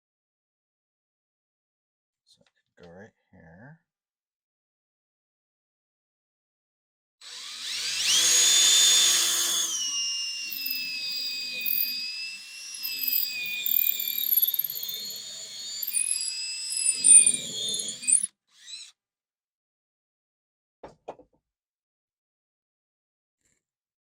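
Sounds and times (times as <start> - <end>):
electric drill whining: 7.2 - 18.9.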